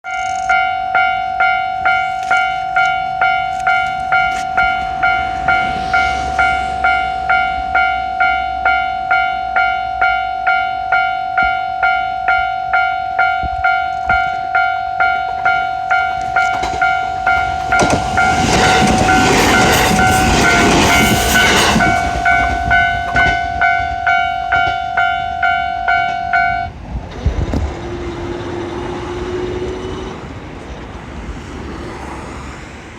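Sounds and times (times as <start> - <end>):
crossing warning bell ringing: 0.0 - 26.8
train passing: 0.1 - 32.9.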